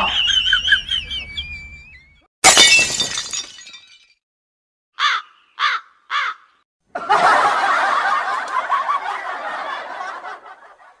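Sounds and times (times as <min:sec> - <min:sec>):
harsh cawing calls: 0:05.0 - 0:06.6
canned audience laughter: 0:06.9 - 0:11.0.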